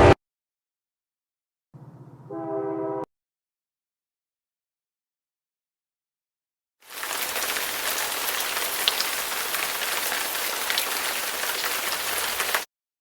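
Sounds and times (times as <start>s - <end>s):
rain-like hiss with crackles: 6.8s - 12.7s.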